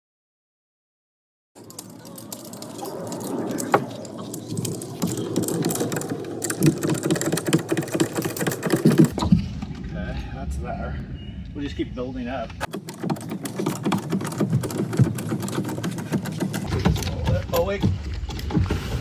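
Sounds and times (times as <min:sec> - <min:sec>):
mechanical clattering with clicks: 0:01.6 - 0:09.4, 0:12.6 - 0:19.0.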